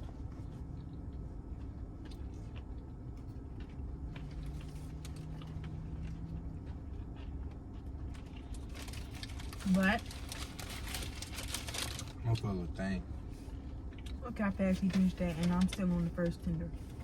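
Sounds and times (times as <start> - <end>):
chewing with small clicks: 0.0 - 9.3
low hum: 0.0 - 17.0
low rumble: 0.0 - 17.0.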